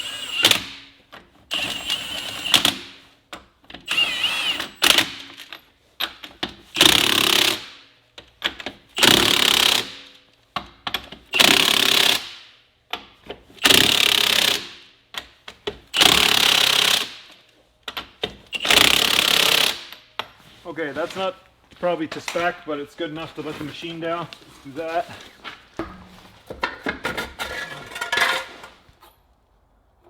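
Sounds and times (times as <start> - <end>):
impact wrench hammering: 25.8 - 27.0.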